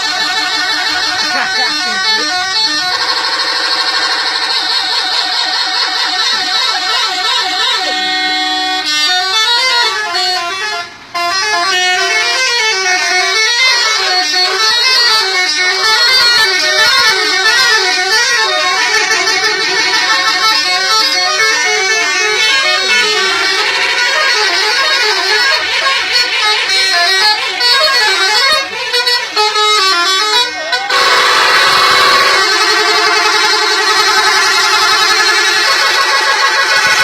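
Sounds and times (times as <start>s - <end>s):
musical horn melody: 0.0s - 37.0s
steady horn blast: 0.0s - 37.0s.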